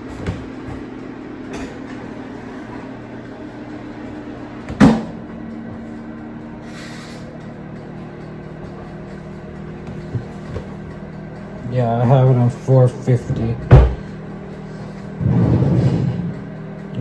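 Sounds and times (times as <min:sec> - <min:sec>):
oven humming: 0:00.0 - 0:17.0
loud knock: 0:13.7 - 0:14.0.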